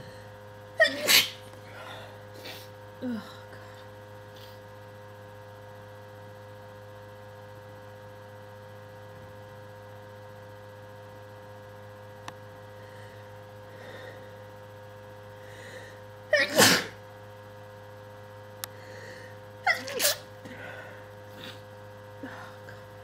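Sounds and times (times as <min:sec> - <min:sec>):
person sneezing: 0:00.8 - 0:03.3, 0:16.4 - 0:17.0, 0:19.6 - 0:22.9.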